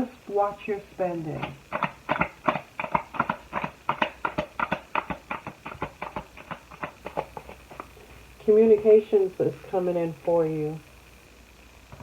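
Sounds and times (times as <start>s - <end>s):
cards being shuffled: 1.4s - 8.0s.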